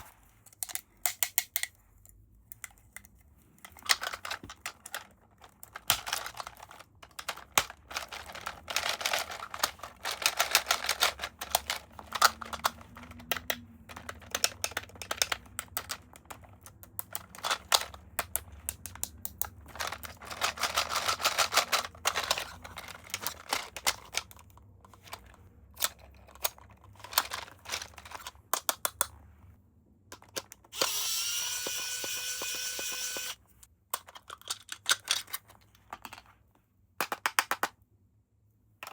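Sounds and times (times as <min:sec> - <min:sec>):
toy packaging crinkling: 0:02.6 - 0:28.7, 0:30.2 - 0:33.4.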